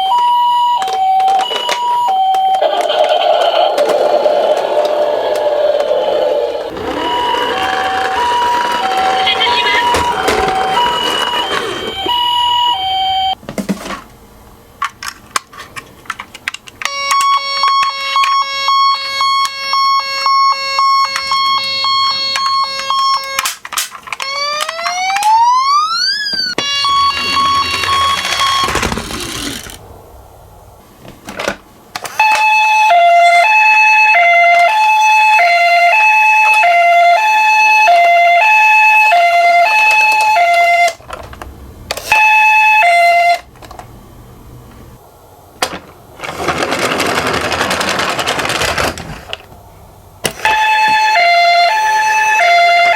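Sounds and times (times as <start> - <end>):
toy electronic siren: 0.0 - 13.4, 16.8 - 23.5, 24.2 - 29.8, 32.0 - 41.0, 42.0 - 43.5, 50.4 - 52.9
toy cars clicking and rattling: 26.9 - 29.8, 45.6 - 49.5.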